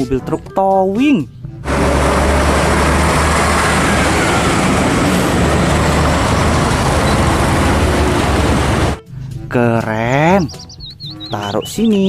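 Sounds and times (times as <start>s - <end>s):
loud rushing noise: 1.6s - 9.0s
vehicle engine rumbling: 1.6s - 9.0s.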